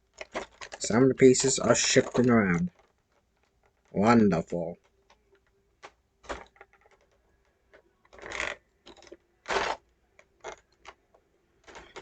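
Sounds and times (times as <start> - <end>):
packaging crinkling: 0.0 - 4.0
small plastic clicks: 0.0 - 4.0, 4.7 - 12.0.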